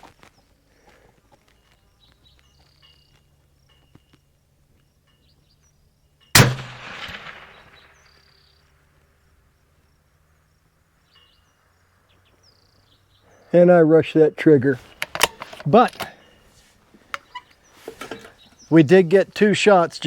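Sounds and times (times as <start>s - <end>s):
suppressed rifle shot: 6.3s - 8.6s.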